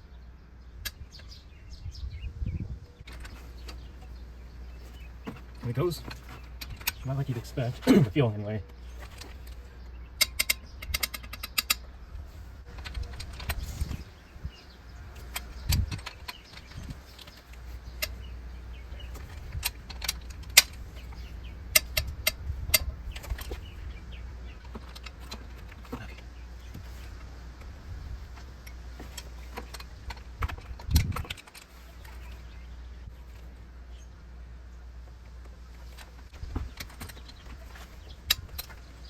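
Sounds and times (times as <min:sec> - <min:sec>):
ratchet clicks: 0:10.2 - 0:11.8.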